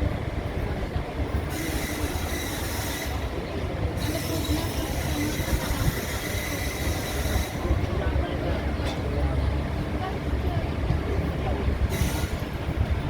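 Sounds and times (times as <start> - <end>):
wheels rumbling on rail: 0.0 - 13.0.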